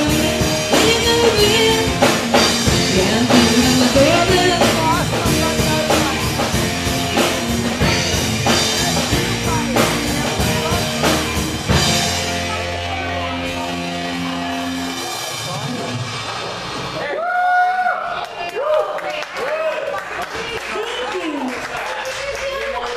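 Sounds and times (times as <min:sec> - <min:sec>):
rock band playing: 0:00.0 - 0:17.2.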